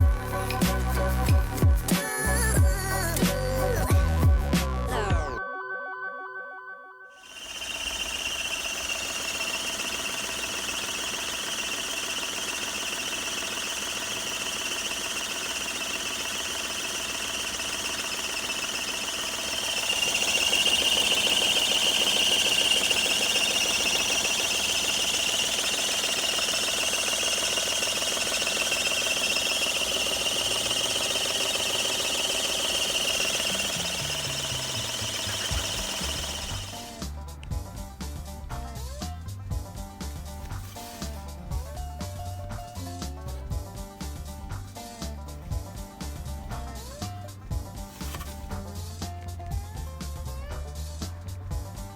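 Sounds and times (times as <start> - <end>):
high-pitched drive belt squeal: 7.2 - 37.1
car engine running: 7.3 - 37.6.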